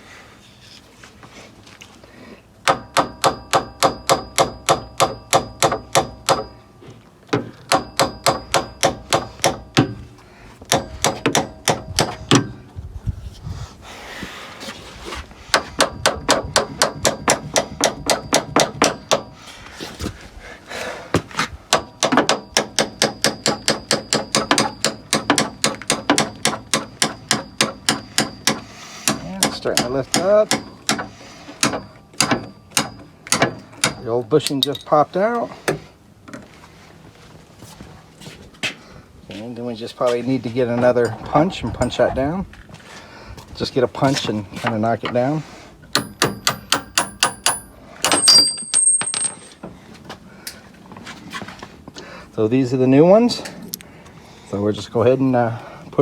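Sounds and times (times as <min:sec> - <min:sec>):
hammer striking metal tool: 0:02.6 - 0:06.6, 0:07.7 - 0:10.0, 0:10.7 - 0:12.6, 0:15.8 - 0:19.3, 0:21.7 - 0:34.8, 0:45.9 - 0:49.5.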